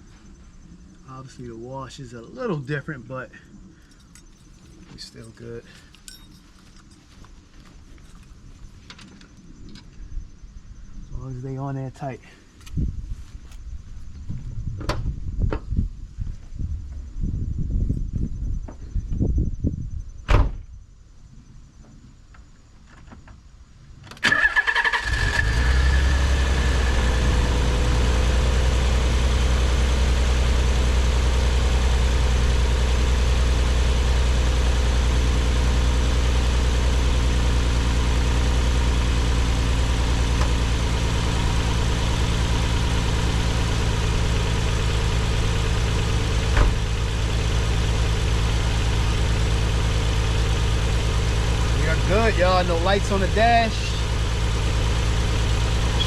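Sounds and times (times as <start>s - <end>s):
car engine cranking and idling: 24.1s - 56.0s
high whine: 37.0s - 56.0s.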